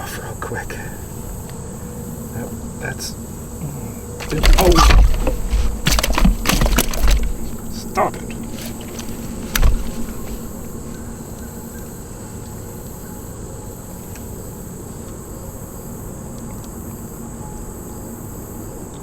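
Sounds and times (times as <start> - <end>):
insects droning: 0.0 - 19.0
background noise rush: 0.4 - 11.1.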